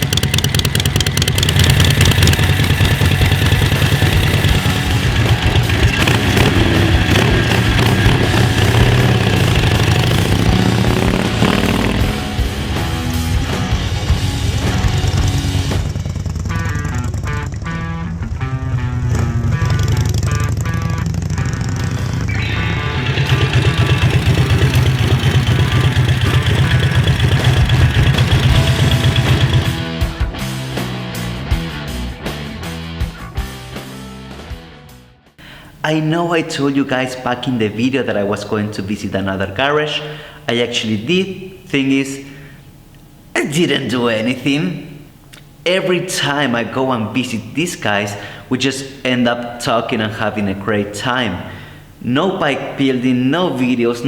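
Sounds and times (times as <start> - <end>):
rapid ticking clatter: 0.0 - 12.2, 22.5 - 29.9
motorcycle engine running: 0.0 - 30.1.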